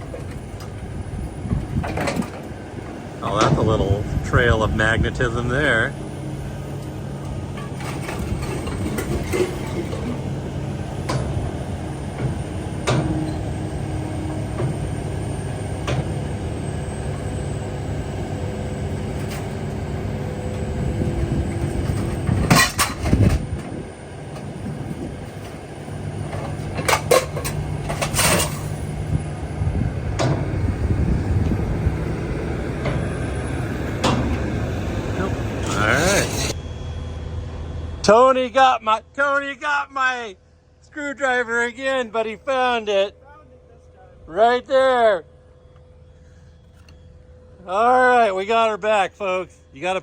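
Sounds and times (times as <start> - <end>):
scrap metal clanking and banging: 0.0 - 5.7, 6.6 - 15.0, 18.8 - 29.2, 35.6 - 36.6
heavy diesel machinery running: 0.0 - 50.0.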